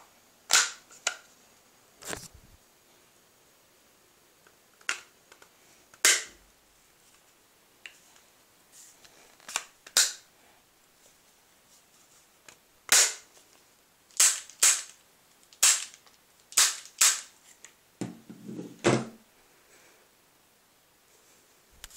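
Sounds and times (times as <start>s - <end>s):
airsoft gun firing: 15.6s - 15.9s.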